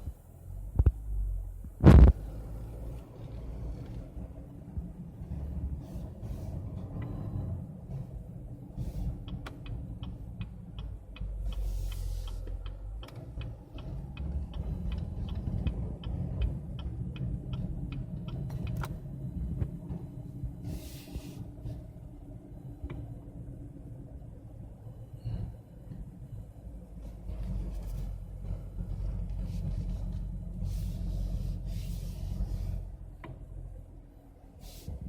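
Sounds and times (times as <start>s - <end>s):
engine idling: 0.0s - 35.0s
steering wheel clicking: 8.7s - 20.1s.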